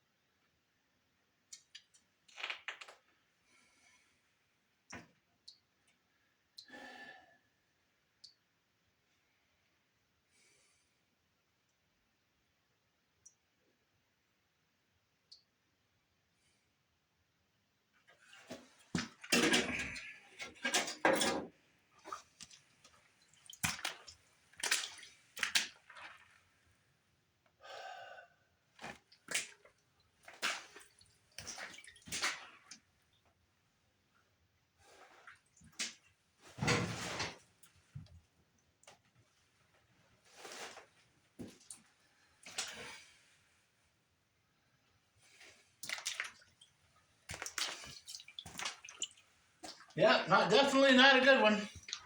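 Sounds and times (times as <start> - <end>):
wet splashing and squishing: 18.1 - 21.0, 22.0 - 26.6, 28.8 - 33.2, 35.0 - 36.1, 40.4 - 43.2, 45.2 - 50.0, 51.7 - 52.0.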